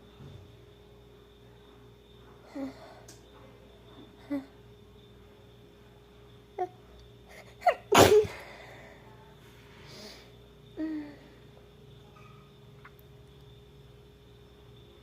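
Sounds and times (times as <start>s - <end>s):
woman sneezing: 7.6s - 8.5s
catching breaths: 8.3s - 11.6s.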